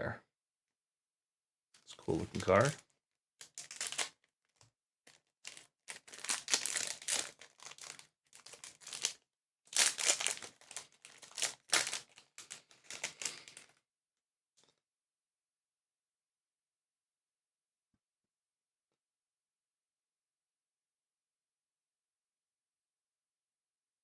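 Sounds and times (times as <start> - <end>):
foil wrapper crinkling and tearing: 2.1 - 2.8, 3.4 - 13.7.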